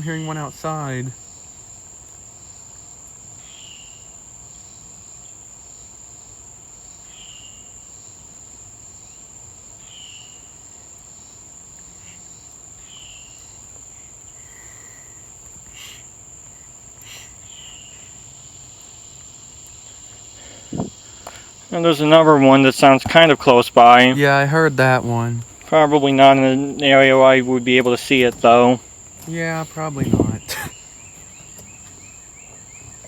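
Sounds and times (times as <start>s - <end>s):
cicadas and crickets chirring: 0.0s - 33.0s
bird chirping: 11.9s - 33.0s.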